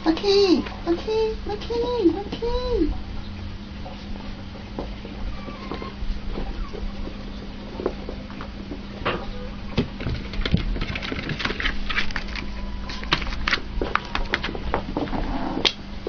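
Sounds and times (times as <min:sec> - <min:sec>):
steady low hum: 0:00.0 - 0:16.0
dogs scuffling in play: 0:10.0 - 0:15.2.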